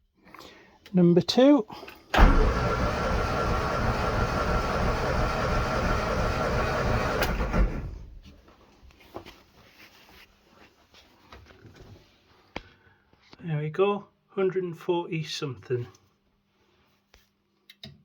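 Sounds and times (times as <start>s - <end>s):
engine cranking on starter motor: 2.0s - 8.2s.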